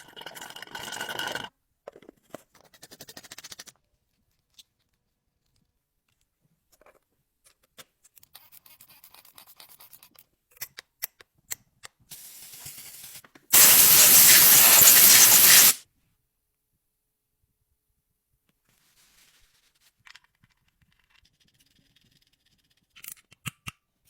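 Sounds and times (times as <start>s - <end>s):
loud steady hiss: 12.2s - 15.8s.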